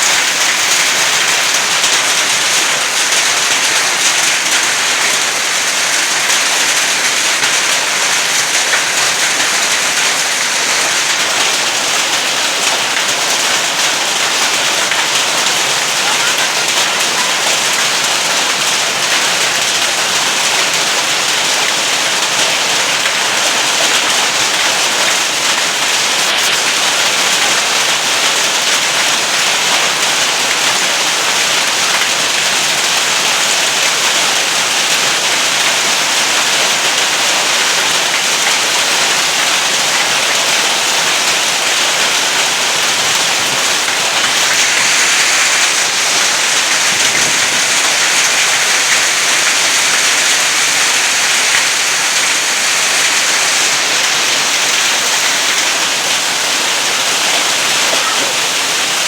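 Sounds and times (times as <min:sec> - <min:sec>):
heavy rain and hail: 0:00.0 - 0:59.0.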